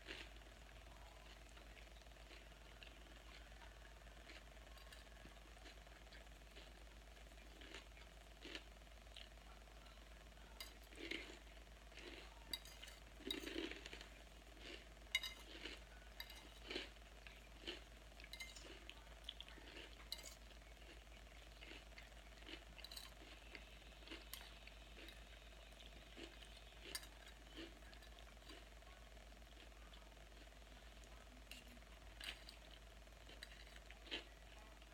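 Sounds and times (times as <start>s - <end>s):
person crunching salad: 0.0s - 0.4s, 1.2s - 9.9s, 10.6s - 28.8s, 31.5s - 34.5s.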